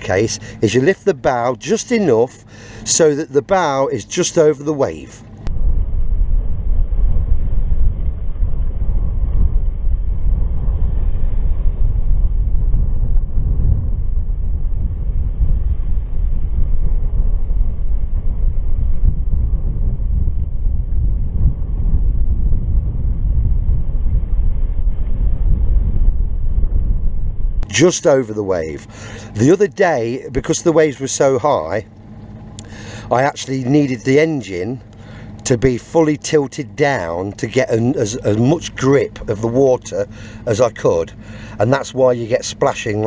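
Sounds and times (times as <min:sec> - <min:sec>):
motorboat engine rumble: 0:00.0 - 0:43.0
wind buffeting microphone: 0:00.0 - 0:43.0.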